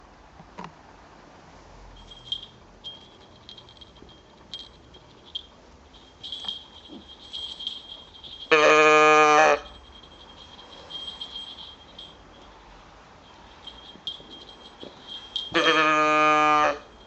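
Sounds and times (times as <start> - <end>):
thin high tone: 2.0 - 17.0
electronic toy moo: 8.6 - 9.6, 15.6 - 16.8.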